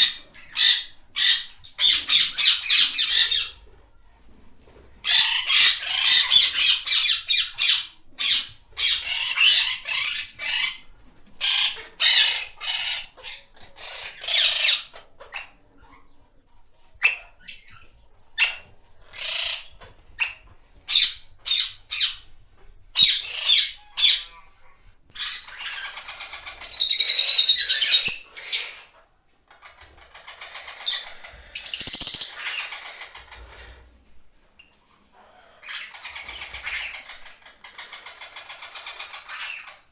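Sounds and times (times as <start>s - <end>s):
parrot squawking: 0.0s - 3.6s, 5.1s - 10.8s, 11.4s - 15.6s, 23.0s - 24.5s, 25.2s - 29.0s, 30.1s - 33.4s, 35.2s - 39.8s.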